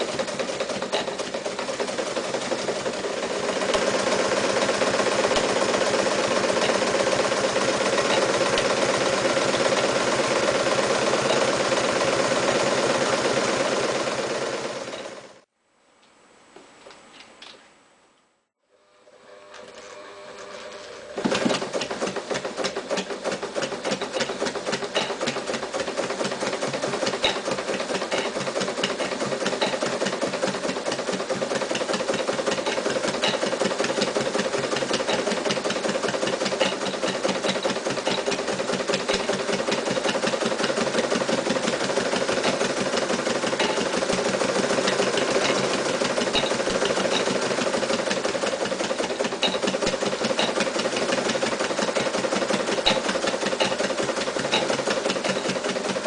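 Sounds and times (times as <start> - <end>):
sewing machine motor hum: 0.0 - 15.5, 18.7 - 56.0
sewing needle clattering: 21.3 - 56.0.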